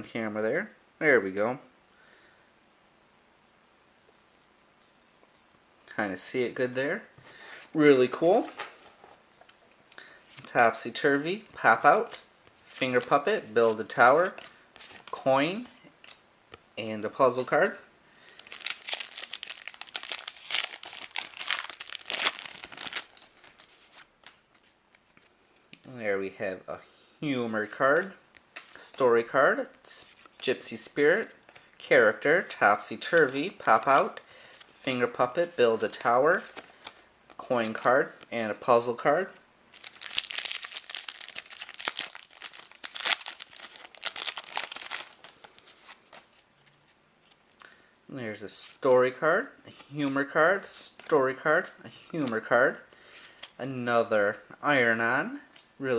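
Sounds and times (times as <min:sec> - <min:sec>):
wrapper crinkling as torn open: 0:18.4 - 0:24.4, 0:39.7 - 0:46.3.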